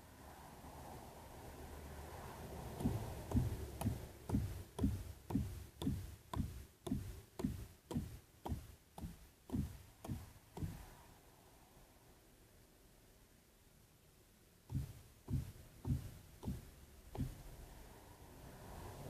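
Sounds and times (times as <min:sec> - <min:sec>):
dull thuds with sharp clicks: 0:02.7 - 0:10.9, 0:14.6 - 0:17.6.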